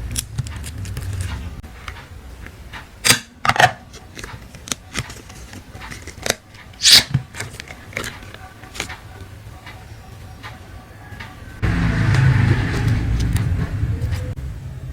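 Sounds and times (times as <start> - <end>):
squishy slime noises: 3.9 - 9.0.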